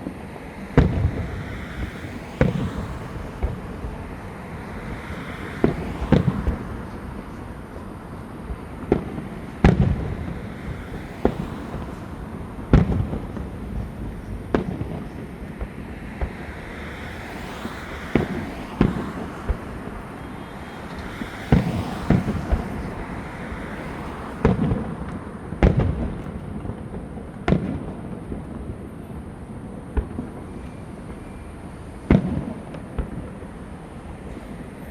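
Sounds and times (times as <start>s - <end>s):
fireworks bangs: 0.0s - 34.8s.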